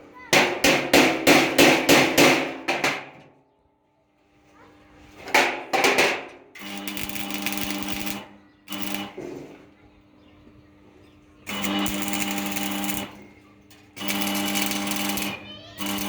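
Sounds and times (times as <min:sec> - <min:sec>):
steady machine hum: 0:04.2 - 0:16.0.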